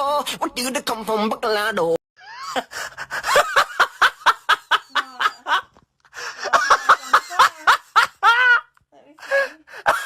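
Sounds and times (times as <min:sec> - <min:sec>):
person laughing: 0:02.2 - 0:10.0.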